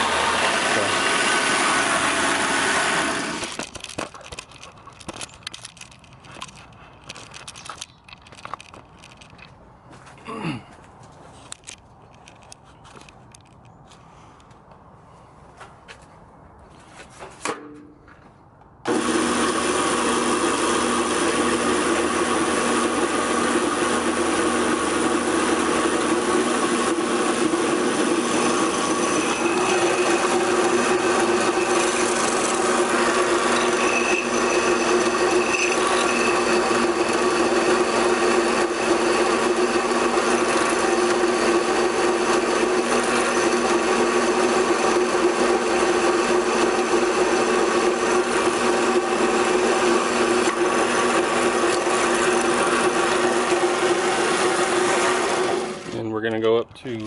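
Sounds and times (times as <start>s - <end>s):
drill bit cutting steel: 0.0s - 3.8s, 18.9s - 56.1s
drill press motor whine: 0.0s - 4.4s, 18.9s - 56.0s.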